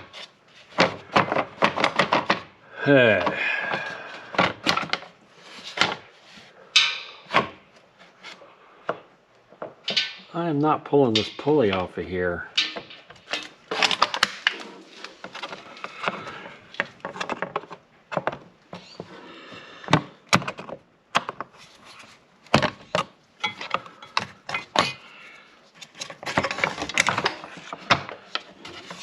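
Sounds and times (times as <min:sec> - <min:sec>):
hand tools knocking and clanking: 0:12.5 - 0:18.9.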